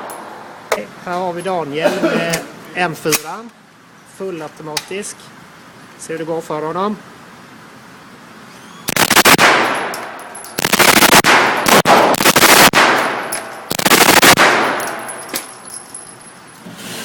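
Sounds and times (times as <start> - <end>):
automatic rifle bursts: 8.9 - 9.9, 10.6 - 15.0
single gunshot: 8.9 - 9.9, 10.8 - 15.0.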